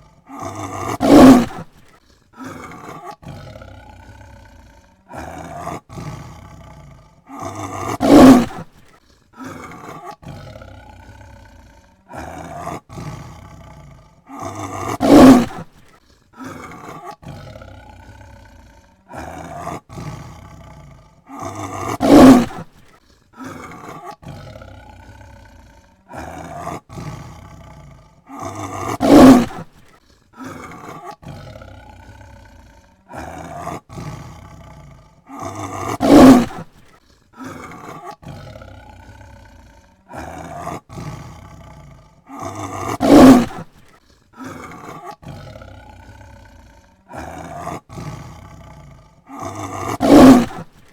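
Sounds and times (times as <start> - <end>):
tiger roaring: 0.0 - 50.9.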